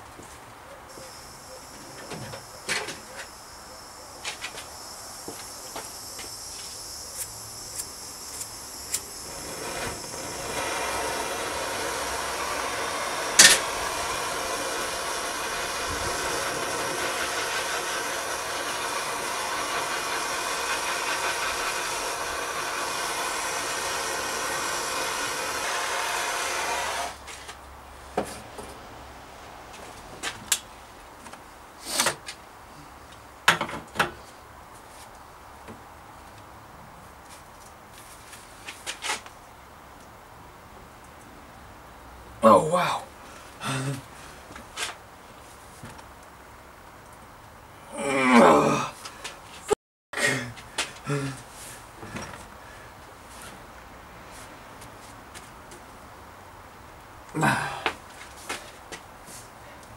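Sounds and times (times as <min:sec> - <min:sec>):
heat gun blowing: 0:04.6 - 0:27.3.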